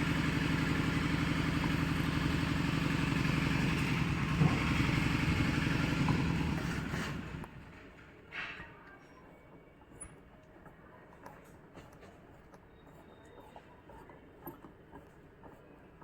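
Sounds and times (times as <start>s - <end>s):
small engine running: 0.0s - 7.6s.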